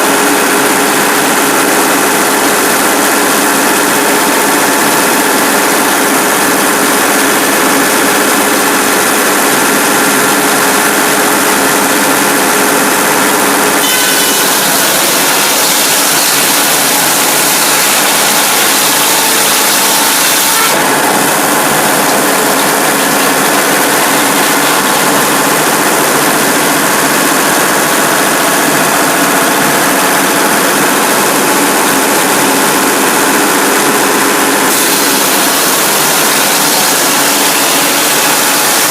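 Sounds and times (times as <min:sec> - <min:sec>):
diesel engine running: 0:20.7 - 0:38.0.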